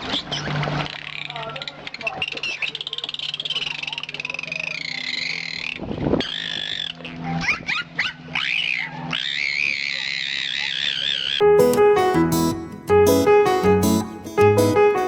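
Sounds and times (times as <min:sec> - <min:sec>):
dolphin whistles: 0:02.0 - 0:11.4.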